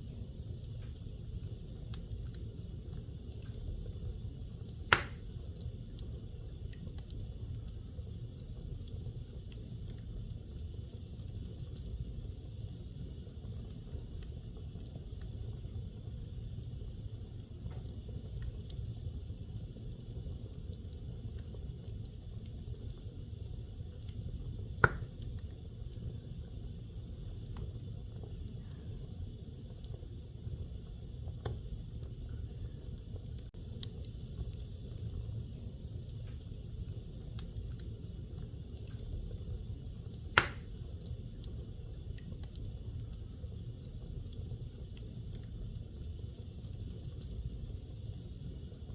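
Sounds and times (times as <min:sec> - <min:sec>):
fire crackles: 0:00.0 - 0:48.9
low rumble of flames: 0:00.0 - 0:48.9
sharp loud pop of fire: 0:04.9 - 0:05.3, 0:24.8 - 0:25.1, 0:40.4 - 0:40.7.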